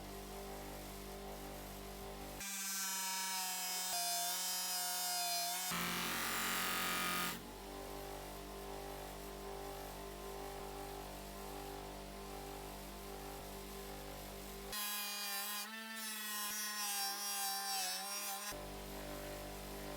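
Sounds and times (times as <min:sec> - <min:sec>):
polishing tool motor humming: 0:05.7 - 0:07.4.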